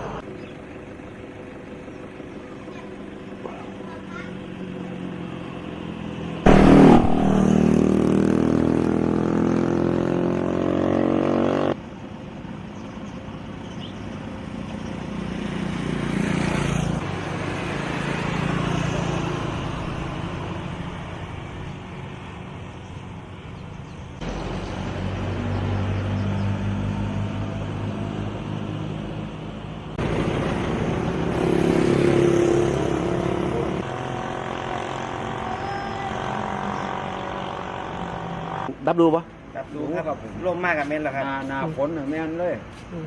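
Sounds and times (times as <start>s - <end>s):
passing traffic: 0.0s - 43.0s
loud engine revving: 6.5s - 11.8s, 30.0s - 38.7s.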